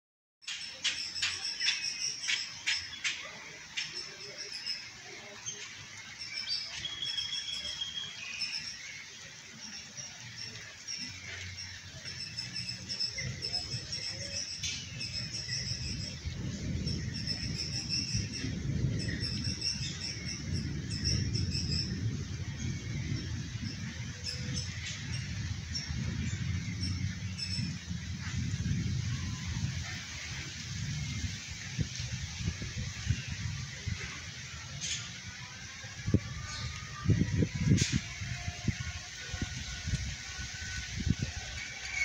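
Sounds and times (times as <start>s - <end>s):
birds chirping: 0.4s - 38.3s
steady rain: 0.4s - 42.0s
low rumble: 10.4s - 41.8s.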